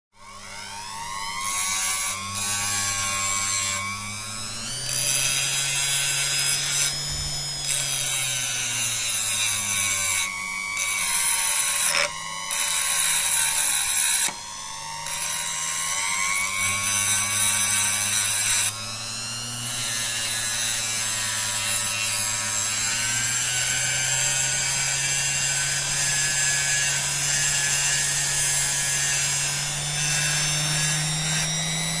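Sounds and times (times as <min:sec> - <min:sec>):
motor humming: 0:00.3 - 0:08.8.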